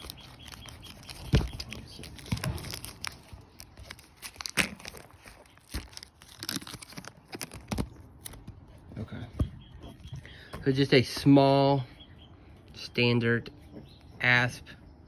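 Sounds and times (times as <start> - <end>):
plastic bag crinkling: 0.0 - 8.4.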